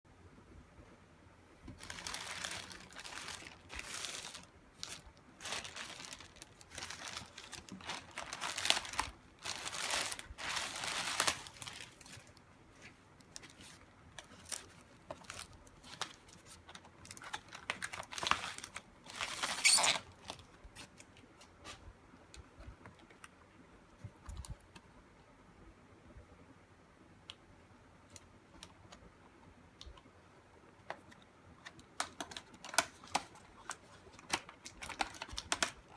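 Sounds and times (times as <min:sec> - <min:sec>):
packaging crinkling: 0:01.8 - 0:21.1, 0:32.0 - 0:35.9.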